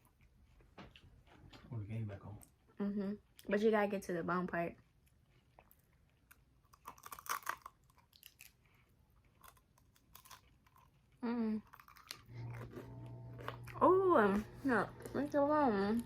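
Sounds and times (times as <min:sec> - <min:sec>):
crisp crunching of ice cream bar: 0:06.0 - 0:13.8.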